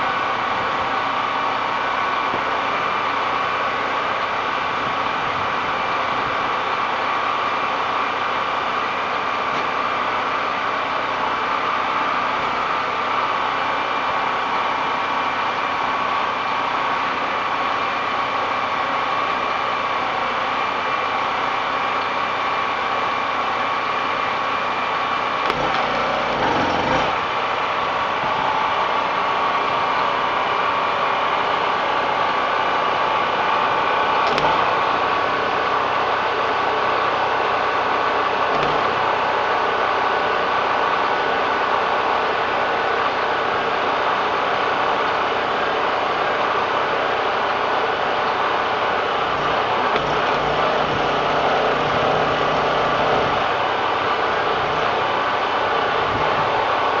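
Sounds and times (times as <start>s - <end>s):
small engine running: 25.4s - 27.5s, 34.2s - 35.0s, 38.5s - 39.1s, 49.1s - 57.0s.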